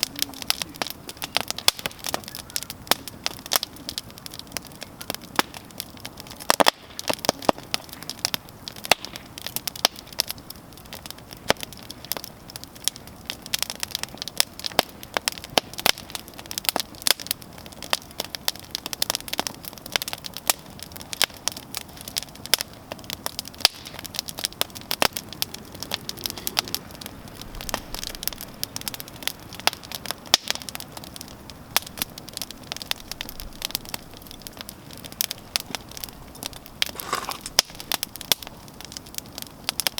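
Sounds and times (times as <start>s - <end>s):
campfire crackling and popping: 0.0s - 39.9s
soft hiss of flame: 23.6s - 39.9s.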